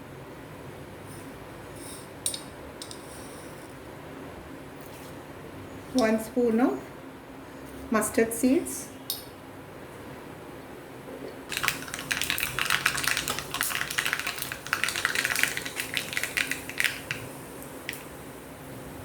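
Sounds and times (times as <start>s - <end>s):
mustard seeds popping in hot oil: 11.5s - 18.3s.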